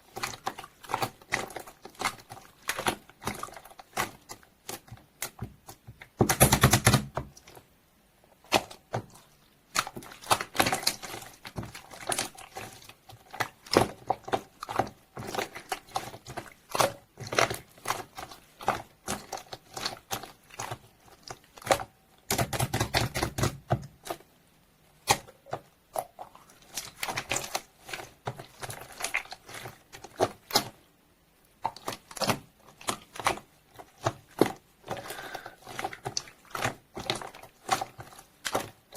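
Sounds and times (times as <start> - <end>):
dense slime squishing: 0.0 - 38.9.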